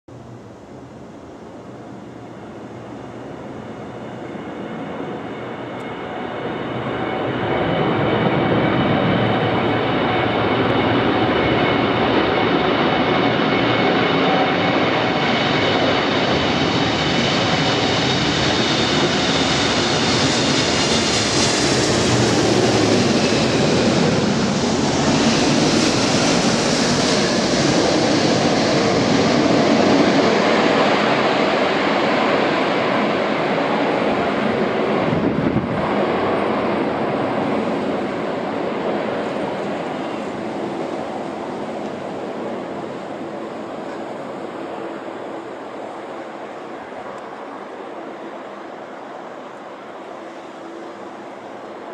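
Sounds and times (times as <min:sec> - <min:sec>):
strong wind rushing: 0:07.0 - 0:43.4.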